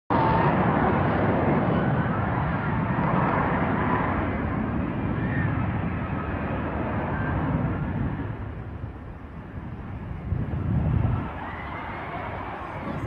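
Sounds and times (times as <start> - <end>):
jet fighter engine rumbling: 0.1 - 13.0.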